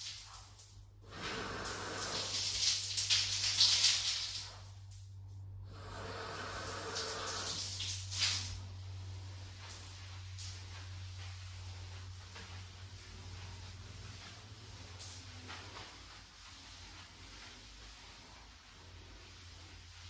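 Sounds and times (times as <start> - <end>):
steady low hum: 4.6 - 20.0.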